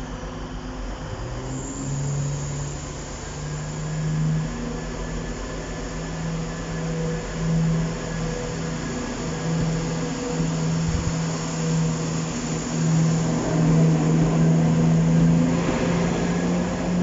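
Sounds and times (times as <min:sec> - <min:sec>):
diesel train engine droning: 0:00.0 - 0:17.0.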